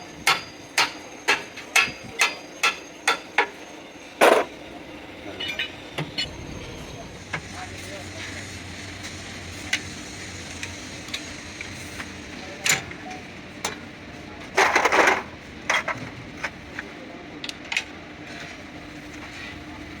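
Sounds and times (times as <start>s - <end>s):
steady low hum: 3.8s - 12.6s.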